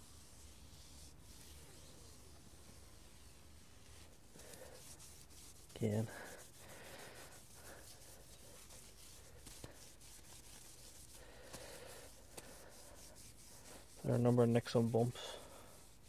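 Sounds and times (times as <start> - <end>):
cloth rubbing on wheel: 0.0 - 16.0.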